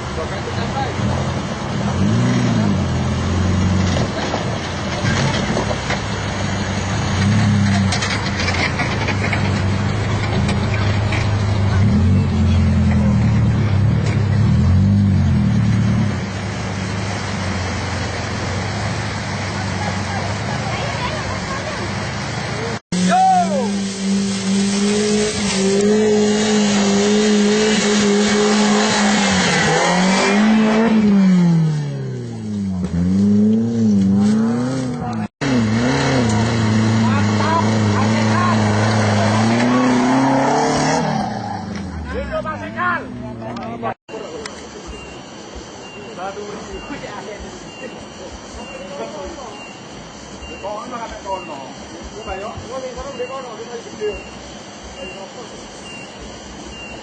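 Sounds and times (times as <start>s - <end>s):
vehicle engine running under load: 0.0s - 57.0s
rattling clatter: 7.2s - 11.8s.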